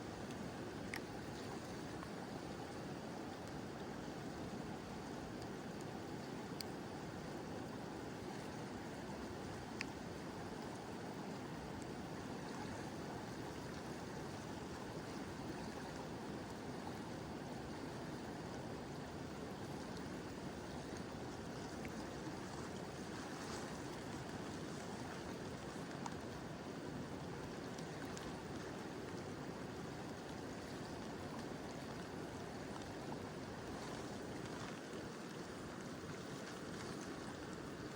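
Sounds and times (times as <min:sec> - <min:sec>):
faint rain drips: 0:00.0 - 0:37.9
faint ticks: 0:00.2 - 0:02.1, 0:05.4 - 0:06.8, 0:09.6 - 0:10.0
river water rushing: 0:04.0 - 0:37.9.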